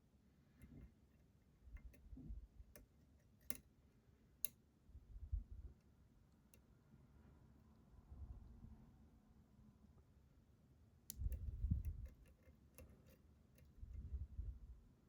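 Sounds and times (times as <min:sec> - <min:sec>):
lock pick metallic clicks: 0:11.1 - 0:13.8.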